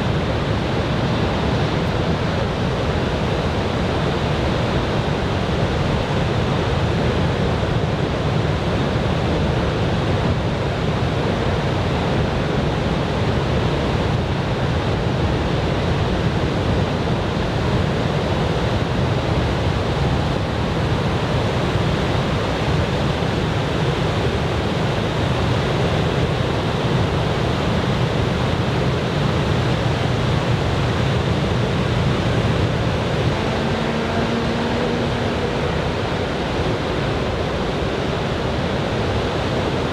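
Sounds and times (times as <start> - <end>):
surf breaking on beach: 20.0 - 37.3.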